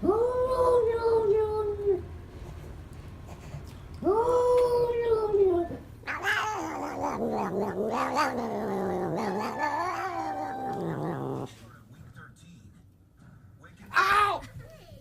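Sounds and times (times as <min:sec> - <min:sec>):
cat yowling: 0:04.0 - 0:11.5.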